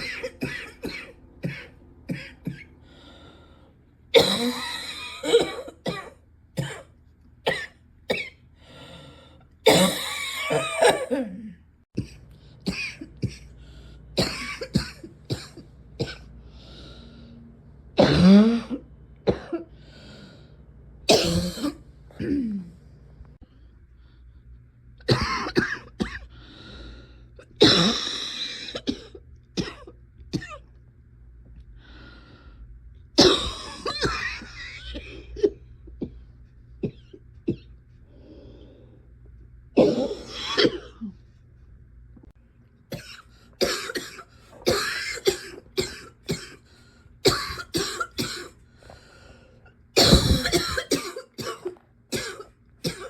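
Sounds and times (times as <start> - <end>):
person coughing: 0.0 - 2.7, 4.1 - 6.9, 9.7 - 13.6, 14.2 - 16.3, 18.0 - 19.7, 21.1 - 22.7, 25.1 - 26.3, 27.6 - 30.7, 33.2 - 36.2, 39.8 - 41.2, 42.9 - 46.6, 47.2 - 48.6, 50.0 - 53.0.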